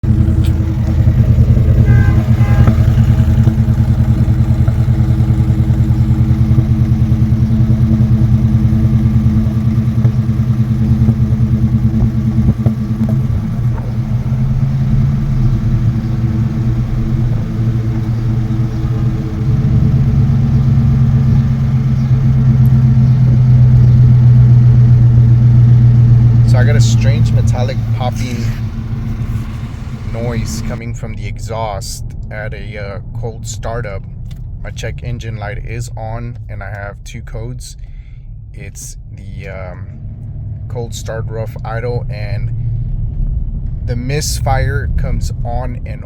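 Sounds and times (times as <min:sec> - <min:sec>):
engine fast idling: 0:00.0 - 0:32.3
metallic exhaust rattle: 0:00.0 - 0:36.2.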